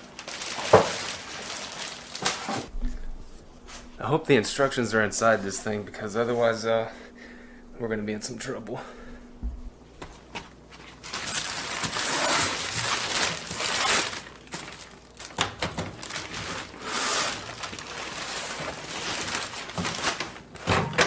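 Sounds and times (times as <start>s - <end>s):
packaging rustling and crinkling: 0.0s - 4.0s, 10.0s - 21.0s.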